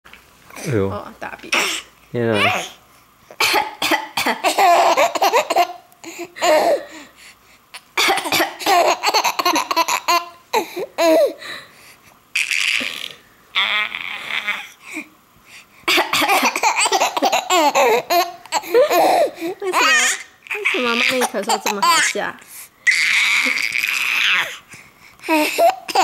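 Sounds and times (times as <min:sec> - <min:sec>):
child coughing: 0:01.6 - 0:02.7, 0:03.4 - 0:05.7, 0:08.0 - 0:09.4, 0:15.9 - 0:17.9, 0:20.7 - 0:22.1, 0:25.4 - 0:26.0.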